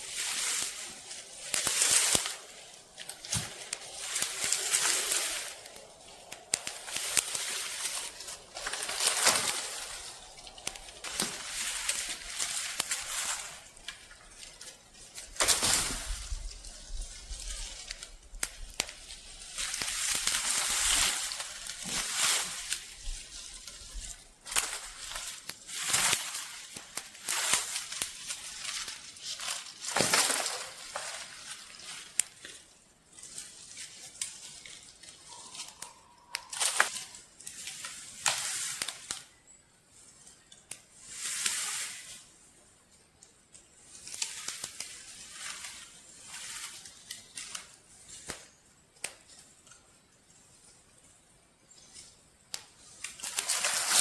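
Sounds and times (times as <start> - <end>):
dry leaves crunching and rustling: 0.0 - 42.5, 43.7 - 49.3, 51.7 - 54.0
twigs snapping: 0.2 - 32.7, 33.3 - 39.3.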